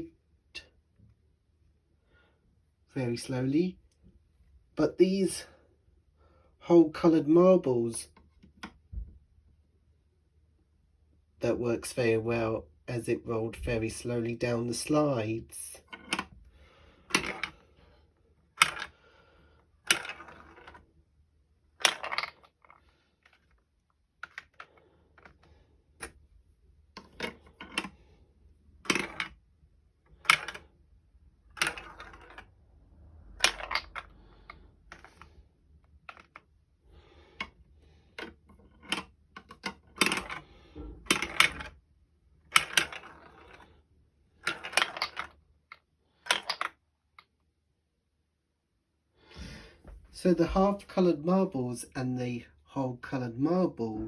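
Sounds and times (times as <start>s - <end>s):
marbles clattering on plastic track: 15.6s - 16.4s, 17.1s - 17.6s, 18.6s - 19.0s, 19.8s - 20.8s, 21.8s - 23.6s, 27.0s - 28.0s, 28.8s - 29.4s, 30.2s - 30.7s, 31.5s - 32.6s, 33.2s - 35.3s, 38.2s - 40.5s, 41.1s - 41.8s, 42.5s - 43.8s, 44.4s - 45.4s, 46.2s - 46.8s.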